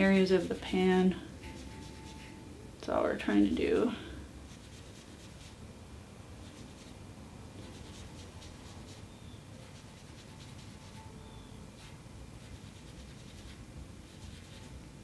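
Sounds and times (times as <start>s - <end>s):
steel wool rubbing on metal: 0.0s - 2.4s.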